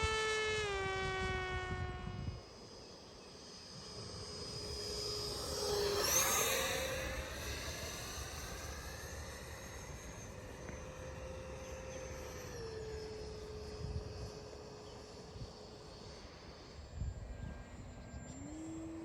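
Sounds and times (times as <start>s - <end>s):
wind rumbling on microphone: 0.0s - 2.4s
model airplane motor whining: 0.0s - 19.0s.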